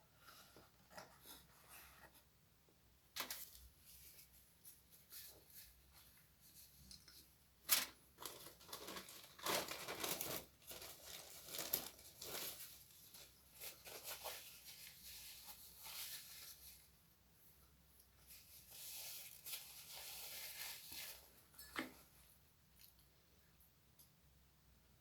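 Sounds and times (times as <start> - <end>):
croissant crackling and tearing: 8.2 - 12.7.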